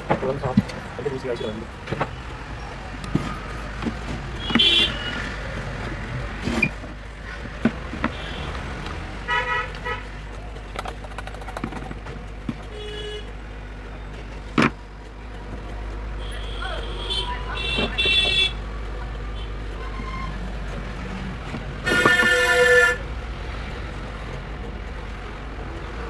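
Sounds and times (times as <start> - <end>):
traffic hum: 0.0 - 26.0
vehicle horns honking: 1.1 - 1.7, 4.4 - 5.4, 8.0 - 10.4, 12.5 - 14.1, 16.1 - 20.4, 21.6 - 23.2.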